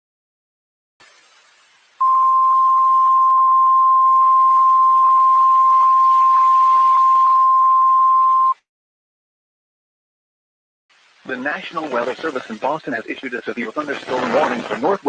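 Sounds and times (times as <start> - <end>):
crackly radio static: 2.0 - 7.4, 11.2 - 15.0
steady alarm tone: 2.0 - 8.5.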